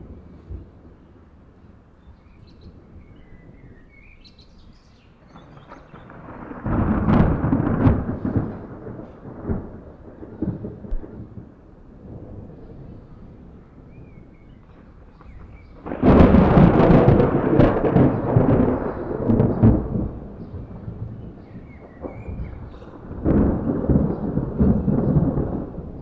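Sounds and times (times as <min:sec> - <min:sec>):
thunder rumbling and clapping: 0:05.2 - 0:26.0.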